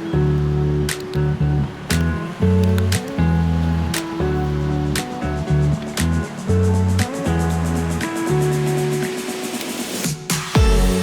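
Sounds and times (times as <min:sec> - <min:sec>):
held synth notes: 0:00.0 - 0:11.0
heavy bass beat: 0:03.9 - 0:11.0.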